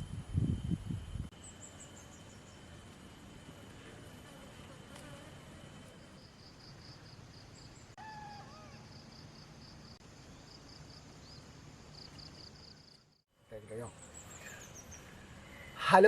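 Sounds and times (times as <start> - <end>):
insect chirping in fast pulses: 0.0 - 16.0
bird call: 7.9 - 8.9.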